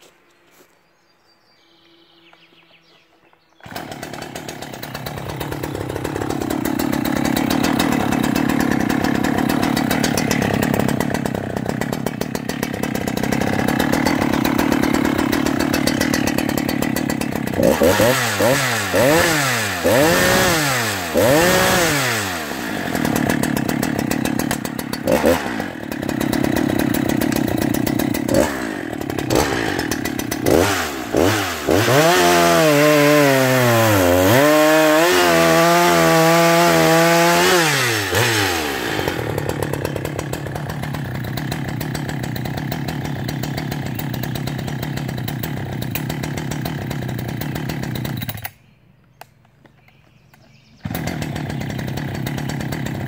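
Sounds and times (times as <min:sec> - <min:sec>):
chainsaw engine revving and idling: 0:03.6 - 0:48.6, 0:50.8 - 0:53.0.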